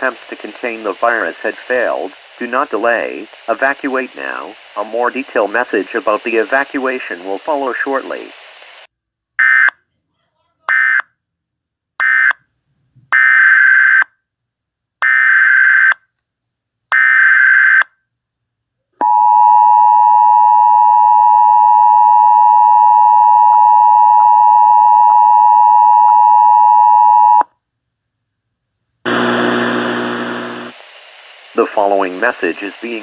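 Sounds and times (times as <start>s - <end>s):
loud noise burst: 29.1s - 30.8s.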